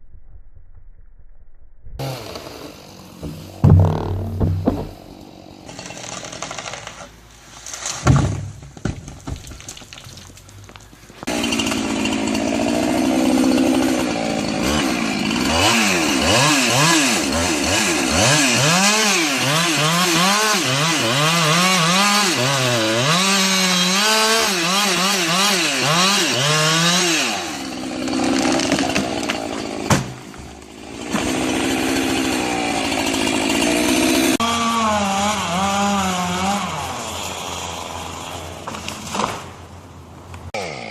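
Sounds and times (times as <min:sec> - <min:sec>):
chainsaw cutting wood: 0:02.0 - 0:07.1, 0:11.2 - 0:39.5.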